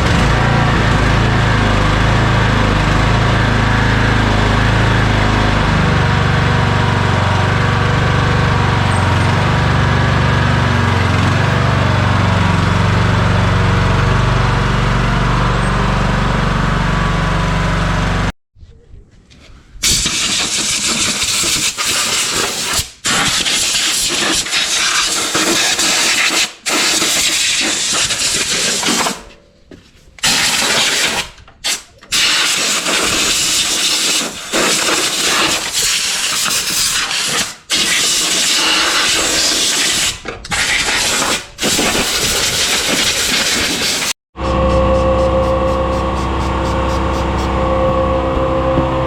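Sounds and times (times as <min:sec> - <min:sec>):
pressure washer jet hissing: 0:30.2 - 0:47.8.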